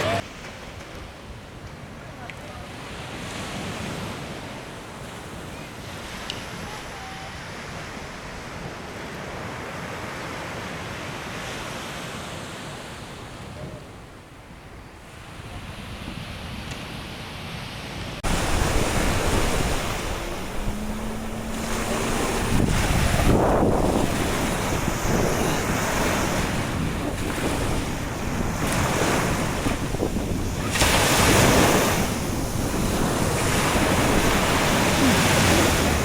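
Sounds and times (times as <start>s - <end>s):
sea waves breaking on beach: 15.1s - 36.0s
wind buffeting microphone: 18.2s - 36.0s.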